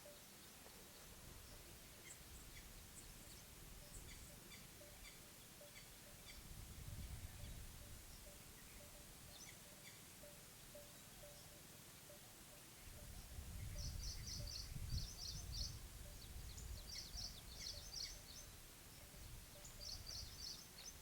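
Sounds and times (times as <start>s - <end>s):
bird chirps: 1.5s - 6.4s, 7.3s - 21.0s.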